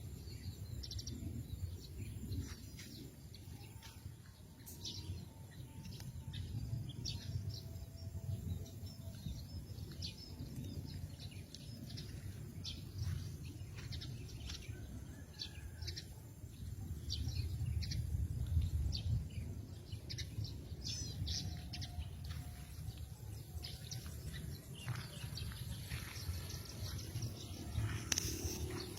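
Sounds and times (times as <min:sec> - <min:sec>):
steady low rumble: 0:00.0 - 0:28.9
small birds chirping: 0:00.2 - 0:14.9.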